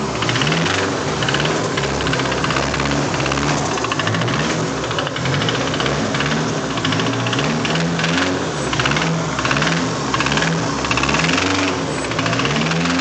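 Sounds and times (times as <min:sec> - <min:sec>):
engine knocking: 0:00.0 - 0:13.0.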